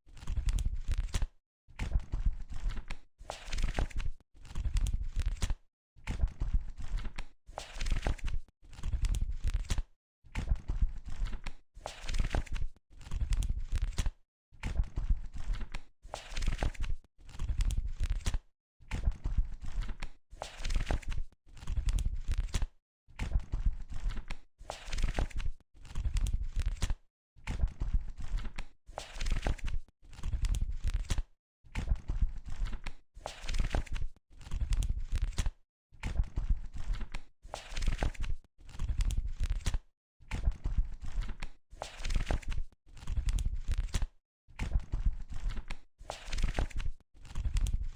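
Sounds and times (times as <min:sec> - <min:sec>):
book pages being turned: 0:00.1 - 0:01.3, 0:02.5 - 0:05.6, 0:06.8 - 0:09.8, 0:11.1 - 0:14.1, 0:15.4 - 0:18.4, 0:19.7 - 0:22.7, 0:24.0 - 0:27.0, 0:28.2 - 0:31.2, 0:32.4 - 0:35.5, 0:36.7 - 0:39.8, 0:41.0 - 0:44.1, 0:45.0 - 0:47.9.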